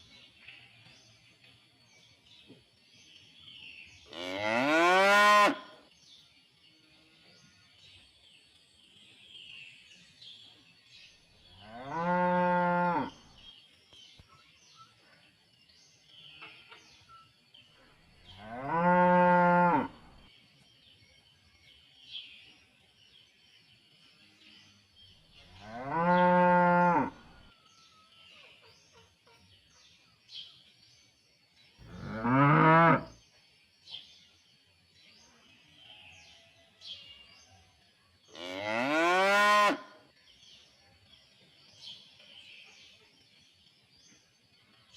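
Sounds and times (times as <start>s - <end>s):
cattle mooing: 31.8s - 33.1s.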